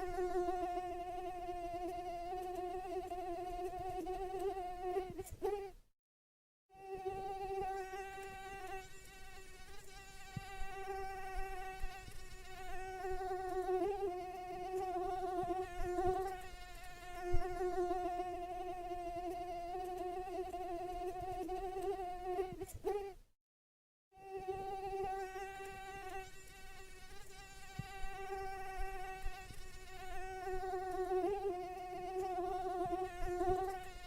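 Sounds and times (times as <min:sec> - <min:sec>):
mosquito whining: 0:24.2 - 0:34.0.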